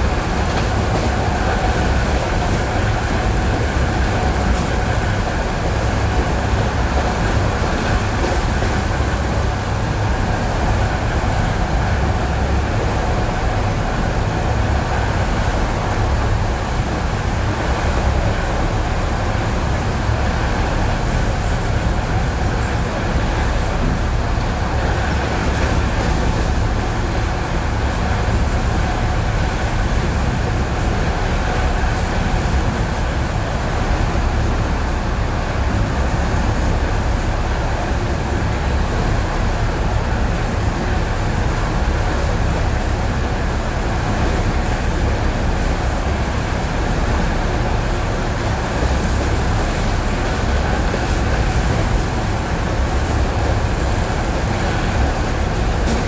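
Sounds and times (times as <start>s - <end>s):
train wheels rumbling on rails: 0.0s - 56.0s.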